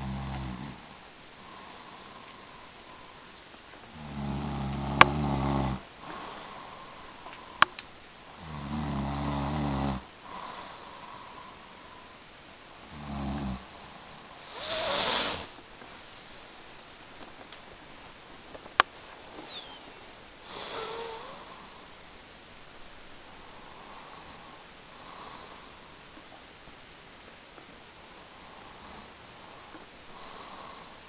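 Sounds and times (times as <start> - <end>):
man snoring: 0.0 - 0.8, 3.9 - 6.3, 8.4 - 10.6, 12.9 - 15.5, 20.4 - 21.6
breathy exhale: 6.0 - 7.7, 20.4 - 22.0.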